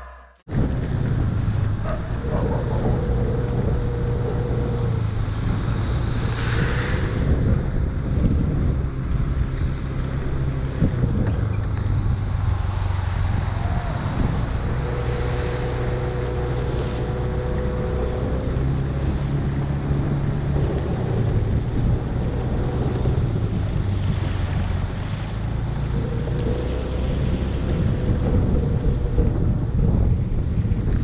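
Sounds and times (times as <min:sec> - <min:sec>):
vehicle engine humming: 0:00.0 - 0:31.0
wind and water noise: 0:00.0 - 0:31.0.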